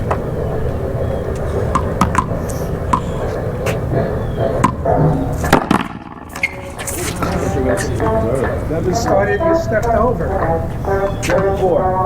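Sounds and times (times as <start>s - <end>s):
paddle smacking rubber ball: 1.7s - 2.3s.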